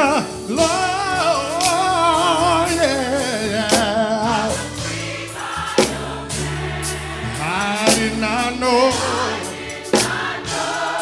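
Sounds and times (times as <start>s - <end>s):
bass line: 0.0s - 10.7s
band playing: 0.0s - 11.0s
gospel choir singing: 0.0s - 11.0s
drum hits: 0.5s - 11.0s.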